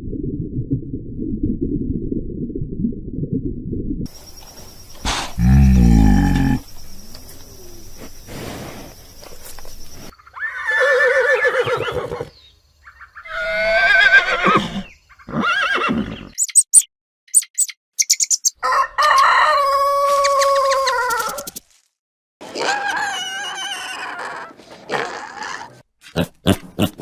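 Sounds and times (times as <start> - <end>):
long falling animal call: 5.0 - 7.8, 22.6 - 25.8
animal pitched cries: 10.2 - 12.3, 12.9 - 16.4, 22.6 - 25.8.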